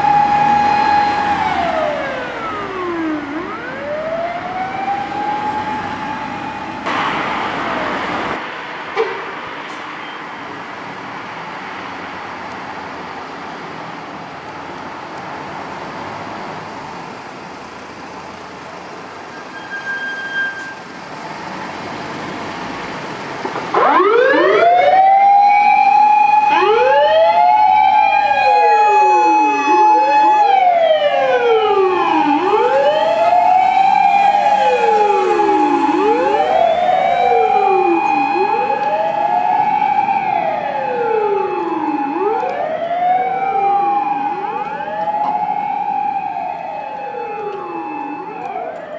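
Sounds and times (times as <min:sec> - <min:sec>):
fire truck sirens wailing: 0:00.0 - 0:10.3, 0:15.4 - 0:48.9
road and engine noise: 0:00.0 - 0:48.9
brief tone: 0:19.3 - 0:20.8.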